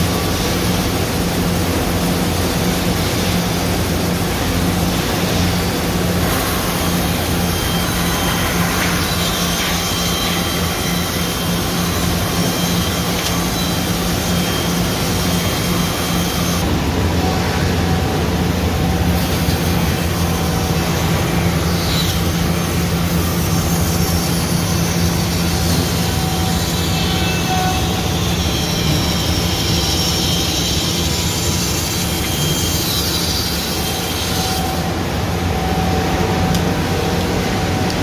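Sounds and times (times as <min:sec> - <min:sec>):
high-pitched machine noise: 0:00.0 - 0:38.0.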